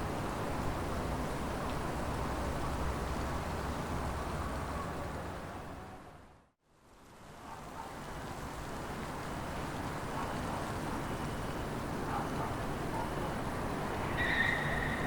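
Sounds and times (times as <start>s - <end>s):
wind blowing through trees: 8.8s - 15.0s.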